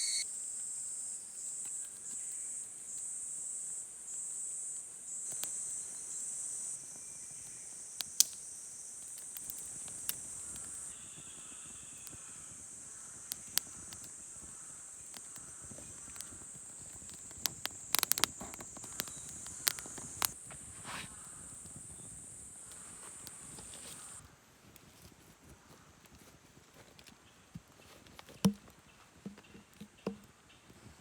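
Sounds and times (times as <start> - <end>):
campfire crackling: 0.0 - 0.2, 7.8 - 10.9, 12.0 - 20.6, 21.5 - 24.2
crickets trilling: 0.0 - 24.2.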